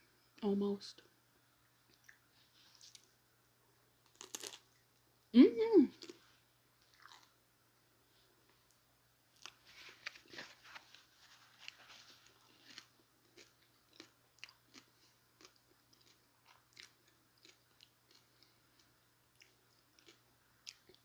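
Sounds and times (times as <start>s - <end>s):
crunchy chewing: 4.0s - 4.9s, 6.0s - 7.4s, 9.4s - 21.0s.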